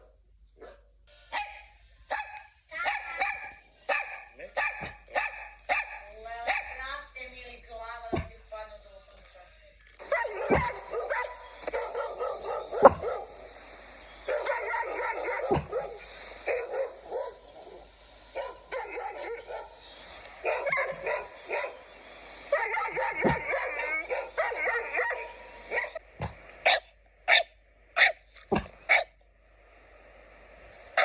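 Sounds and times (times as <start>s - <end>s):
dog barking hoarsely: 2.9s - 6.8s, 8.1s - 8.4s, 10.1s - 13.3s, 14.3s - 16.0s, 20.4s - 21.8s, 22.9s - 24.3s, 25.7s - 29.1s
sharp knocks: 8.1s - 8.4s, 10.5s - 10.8s, 12.8s - 13.2s, 15.5s - 15.8s, 23.2s - 23.5s, 28.5s - 28.9s.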